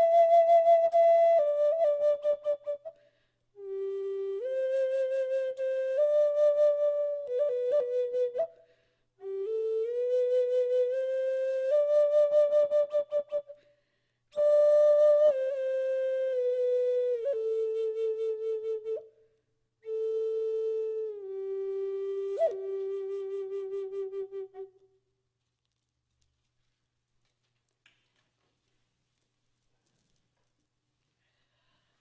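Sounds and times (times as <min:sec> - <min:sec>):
flute playing slow melody: 0:00.0 - 0:03.0, 0:03.6 - 0:08.6, 0:09.2 - 0:13.6, 0:14.4 - 0:19.1, 0:19.8 - 0:24.9.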